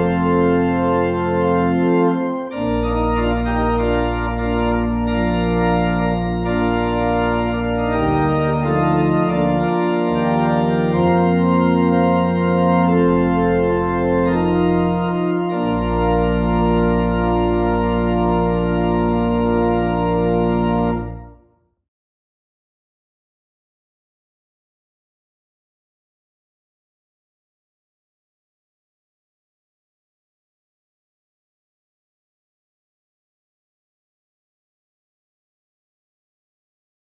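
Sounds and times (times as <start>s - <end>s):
organ music: 0.0s - 21.5s.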